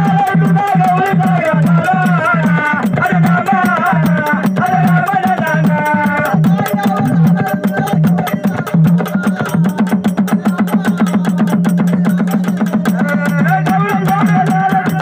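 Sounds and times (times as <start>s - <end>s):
fast steady drumming: 0.0s - 15.0s.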